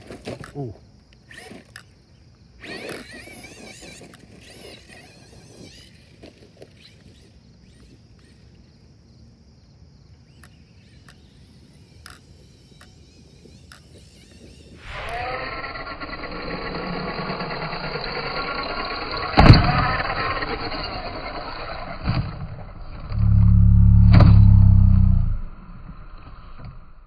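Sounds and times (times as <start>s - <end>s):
electric motor whining: 0.0s - 2.0s, 2.6s - 7.2s, 12.0s - 26.8s.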